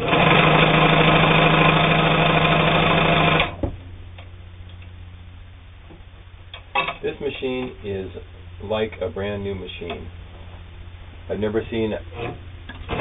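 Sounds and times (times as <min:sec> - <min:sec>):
sewing machine running: 0:00.0 - 0:03.6
faint low hum: 0:03.5 - 0:13.0.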